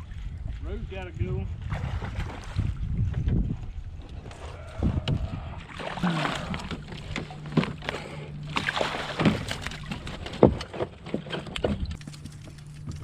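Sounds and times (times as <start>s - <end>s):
low hum: 0.0s - 13.0s
water splashing beside boat: 0.0s - 13.0s
knocks against boat: 8.6s - 11.9s.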